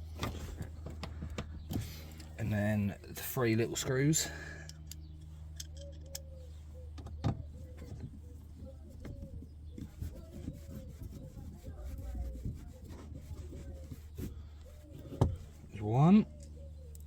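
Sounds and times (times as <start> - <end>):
low steady hum: 0.0 - 17.0
screwdriver clicks and squeaks: 4.6 - 6.5.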